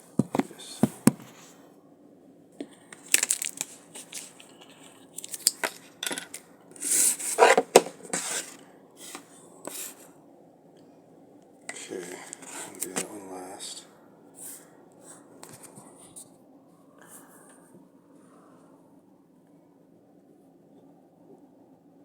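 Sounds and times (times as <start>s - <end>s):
packaging crinkling and tearing: 3.0s - 5.9s.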